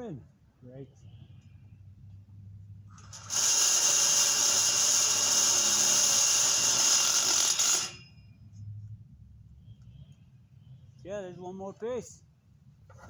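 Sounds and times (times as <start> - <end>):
power drill running: 2.9 - 8.2.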